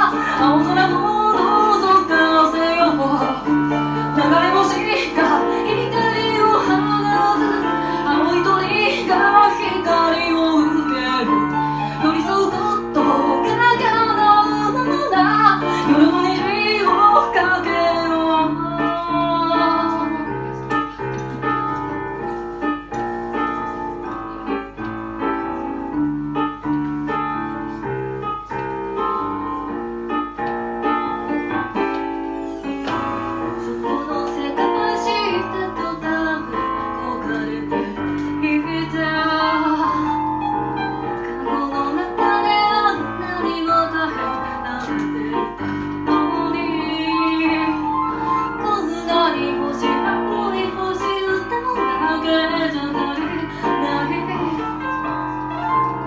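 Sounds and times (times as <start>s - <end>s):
woman singing: 0.0s - 21.8s, 33.4s - 56.0s
piano accompaniment: 0.0s - 56.0s.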